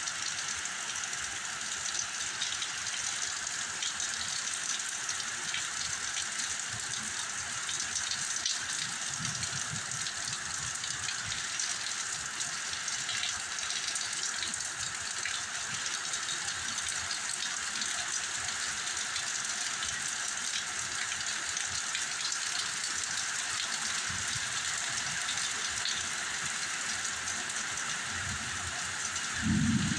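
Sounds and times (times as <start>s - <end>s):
heavy rain hissing: 28.0s - 29.9s
wind gusts on microphone: 29.3s - 29.9s.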